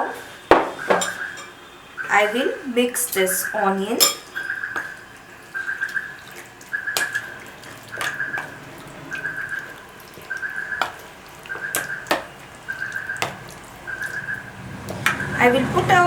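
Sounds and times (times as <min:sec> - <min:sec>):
utensil clinking on bowl: 0:04.0 - 0:04.3.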